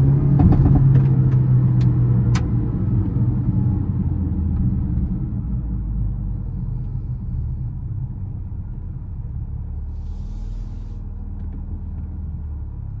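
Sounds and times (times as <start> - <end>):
car engine low rumble: 0.0 - 13.0
brief hiss: 10.0 - 11.0.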